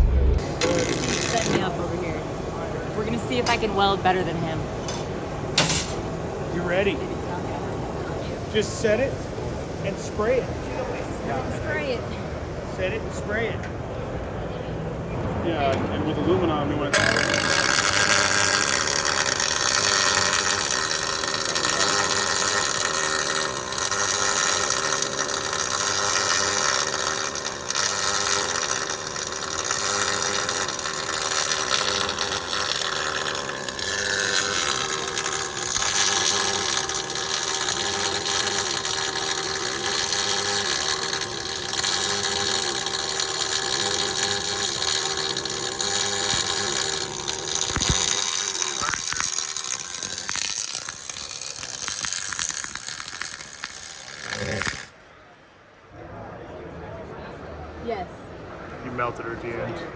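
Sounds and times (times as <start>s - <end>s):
welding arc hissing: 0.0s - 2.2s, 17.0s - 54.9s.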